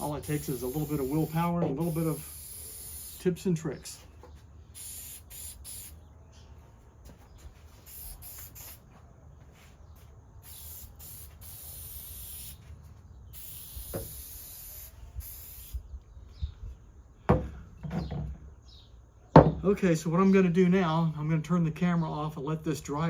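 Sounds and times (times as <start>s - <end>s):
aerosol can spraying: 0.0s - 3.3s, 4.7s - 6.0s, 7.8s - 8.9s, 10.4s - 12.7s, 13.3s - 15.9s.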